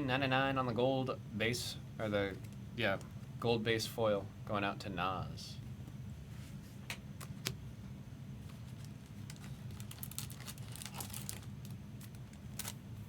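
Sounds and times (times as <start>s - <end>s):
steady low hum: 0.0s - 13.0s
foil wrappers crinkling: 8.6s - 12.8s.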